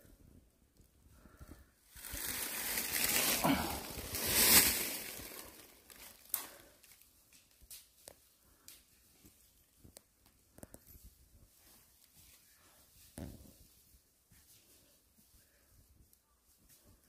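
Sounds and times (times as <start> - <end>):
dry leaves crunching underfoot: 2.0 - 6.4.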